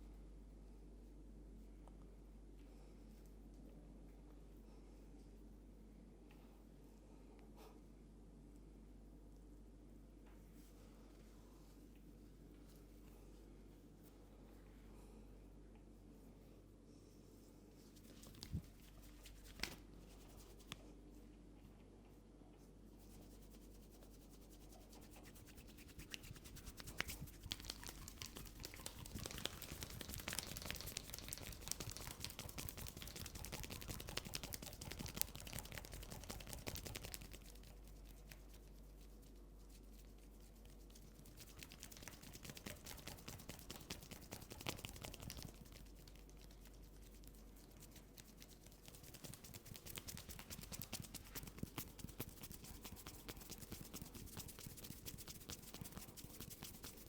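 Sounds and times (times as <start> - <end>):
hands scratching through hair: 17.8 - 21.0, 22.8 - 57.0.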